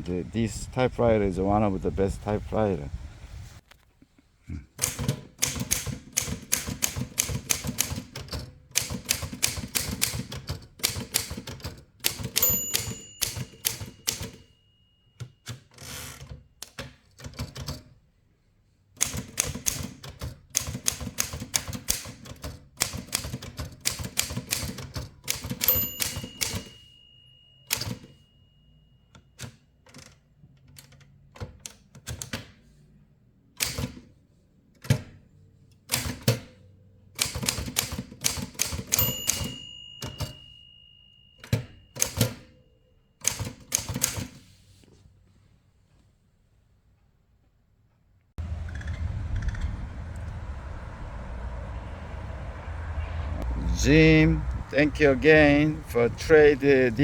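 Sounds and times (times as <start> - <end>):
typewriter key strikes: 4.8 - 14.5, 19.0 - 26.8, 27.7 - 28.2, 37.2 - 40.4, 41.4 - 42.5, 43.2 - 44.4
typewriter bell ringing: 8.8 - 16.3, 23.9 - 29.7, 38.3 - 44.3.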